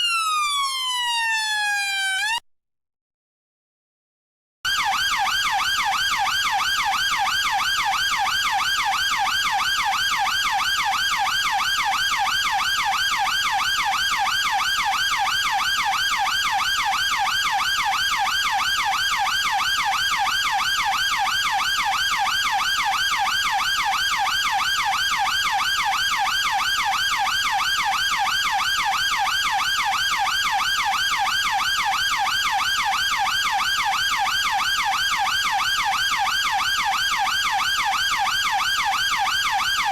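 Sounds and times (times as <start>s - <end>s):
police car siren warbling: 0.0s - 2.4s.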